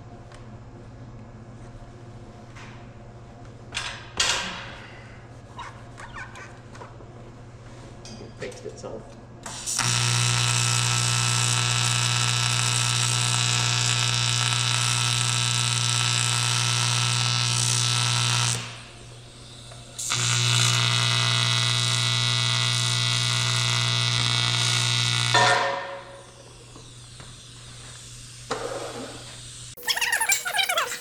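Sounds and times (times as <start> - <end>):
welding arc buzzing hiss: 9.4 - 31.0.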